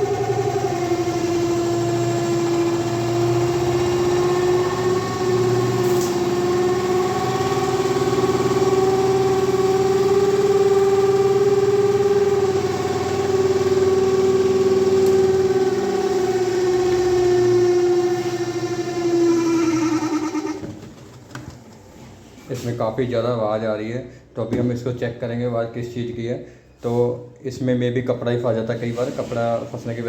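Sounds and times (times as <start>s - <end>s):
spin dryer droning hum: 0.0s - 21.7s.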